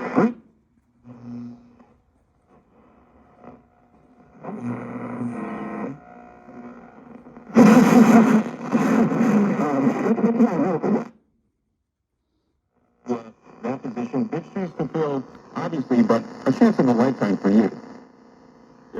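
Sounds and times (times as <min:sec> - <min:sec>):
radio static crackle: 0:04.3 - 0:11.1, 0:13.1 - 0:18.0
distorted radio broadcast: 0:07.5 - 0:11.1, 0:13.1 - 0:17.9.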